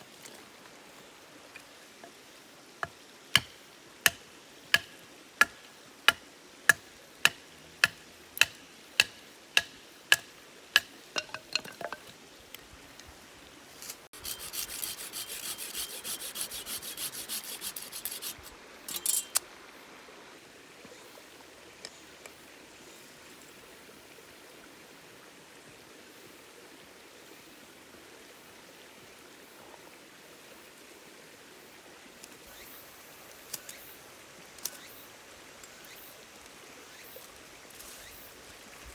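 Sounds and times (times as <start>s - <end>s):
stream murmuring: 0.0s - 38.9s
rustling or scraping: 13.7s - 19.4s, 37.1s - 38.3s.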